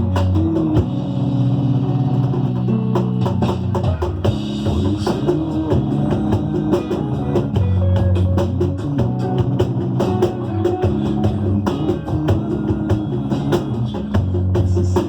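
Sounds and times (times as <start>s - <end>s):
low drums ringing: 0.0s - 15.0s
quick sharp percussion strokes: 2.2s - 14.1s.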